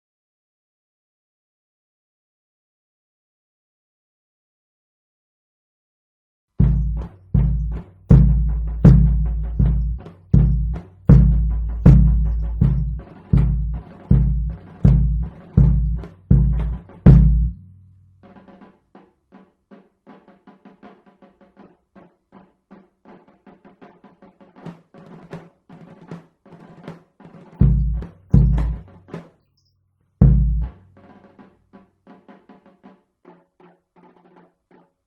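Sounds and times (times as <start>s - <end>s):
deep drum strokes: 6.6s - 17.9s, 27.6s - 29.0s, 30.2s - 31.0s
soft higher pitched percussion notes: 6.6s - 18.0s, 27.6s - 28.9s.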